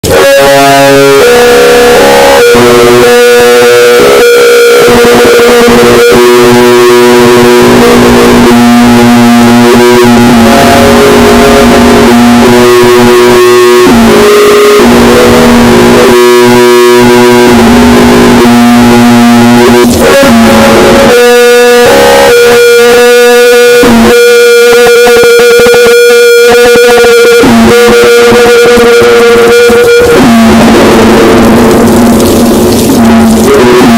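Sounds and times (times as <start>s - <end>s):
harsh alarm tones: 0.0s - 33.9s.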